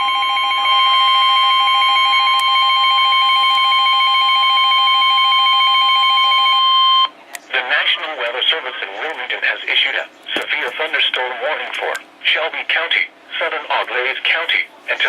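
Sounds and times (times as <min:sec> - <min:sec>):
loud steady warning tone: 0:00.0 - 0:11.8.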